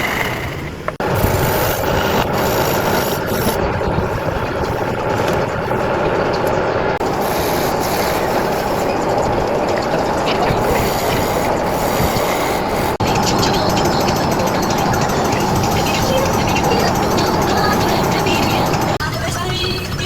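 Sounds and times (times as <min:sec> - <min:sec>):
wood rasping and rubbing: 0:00.0 - 0:03.7, 0:07.0 - 0:13.3.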